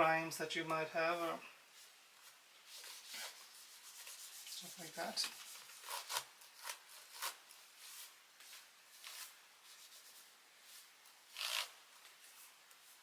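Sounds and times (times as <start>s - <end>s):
cloth rubbing on laptop: 1.7s - 6.3s, 6.9s - 13.0s.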